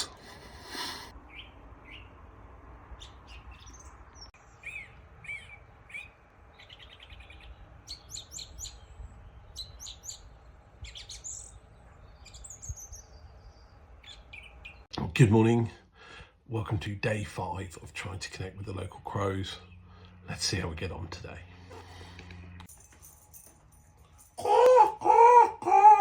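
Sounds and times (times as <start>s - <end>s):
songbirds chirping and singing: 1.2s - 2.2s, 2.9s - 15.0s.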